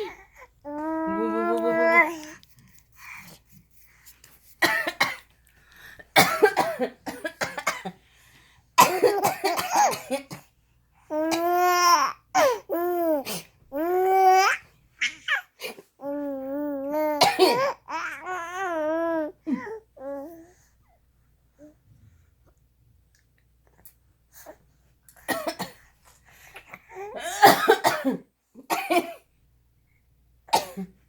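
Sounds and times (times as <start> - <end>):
person coughing: 4.6 - 5.2, 6.1 - 8.0, 8.8 - 10.5, 17.2 - 17.7, 27.2 - 29.2, 30.5 - 31.0.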